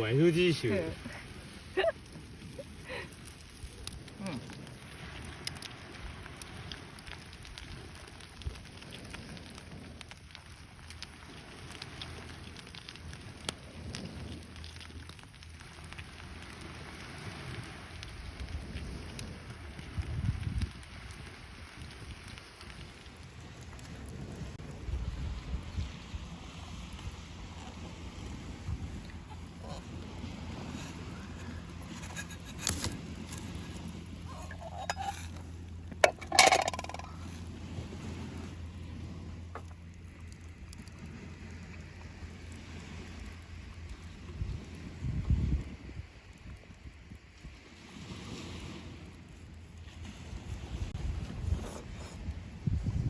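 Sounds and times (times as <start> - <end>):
wood fire crackling and popping: 0.0 - 53.0
cookware knocking and clinking: 36.0 - 37.1
cookware rattling clatter: 36.0 - 37.1.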